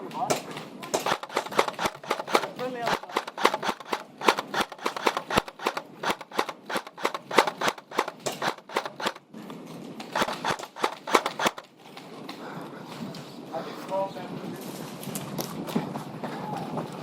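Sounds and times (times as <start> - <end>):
airsoft guns firing: 0.9 - 9.2, 10.1 - 11.7.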